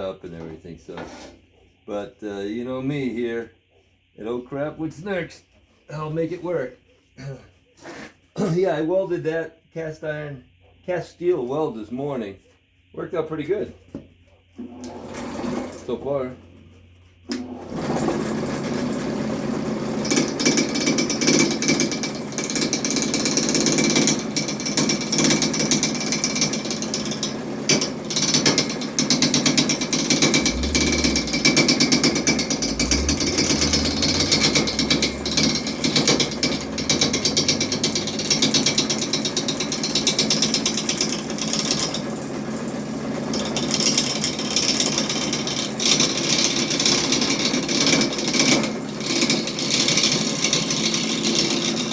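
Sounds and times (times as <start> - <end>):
lathe cutting with rattling chatter: 20.0 - 42.0, 43.3 - 51.9.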